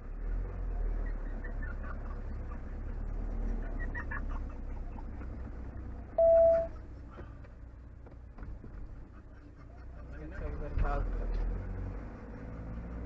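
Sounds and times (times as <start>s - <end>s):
engine rumble while driving: 0.0s - 13.0s
short beep: 6.2s - 6.7s.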